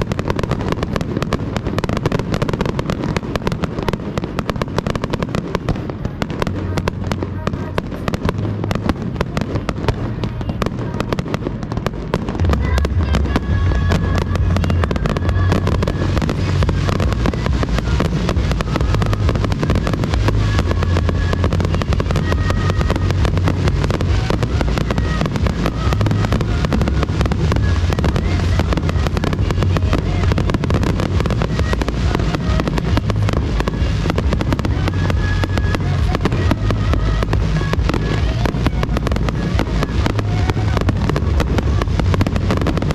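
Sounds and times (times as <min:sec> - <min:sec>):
deep rumble: 0:00.0 - 0:42.9
fireworks booms and crackling: 0:00.0 - 0:42.9.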